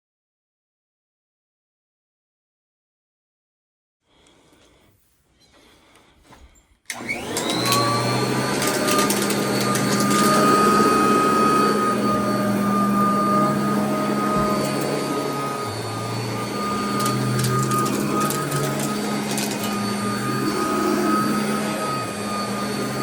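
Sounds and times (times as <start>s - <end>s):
vacuum cleaner motor whine: 6.9s - 23.0s.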